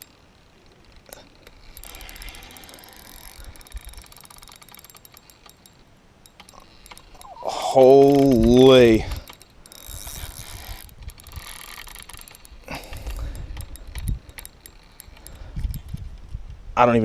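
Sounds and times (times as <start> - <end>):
fishing reel clicking and rattling: 0.0 - 16.4.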